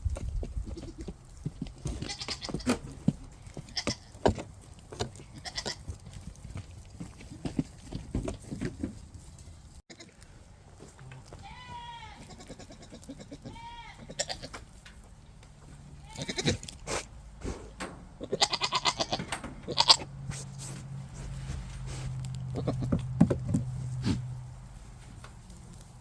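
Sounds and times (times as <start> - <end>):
goats bleating: 1.8 - 2.7, 5.3 - 5.8, 11.2 - 14.6, 16.0 - 16.8, 18.2 - 20.1, 22.4 - 23.0.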